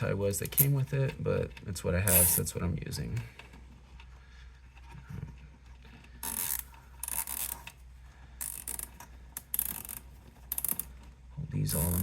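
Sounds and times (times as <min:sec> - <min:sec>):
zip ties ratcheting tight: 0:02.1 - 0:02.4, 0:06.2 - 0:07.7, 0:08.4 - 0:10.9.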